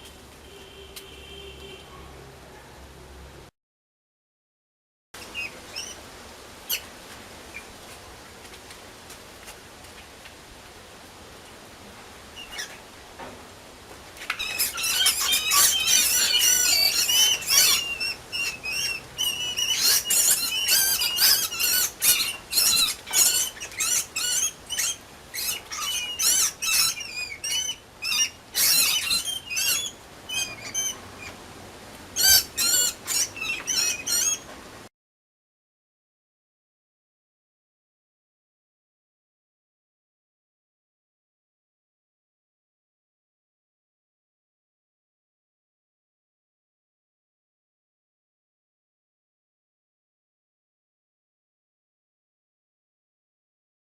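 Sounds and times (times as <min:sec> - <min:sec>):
mouse squeaking: 0:14.4 - 0:31.0, 0:32.2 - 0:34.4.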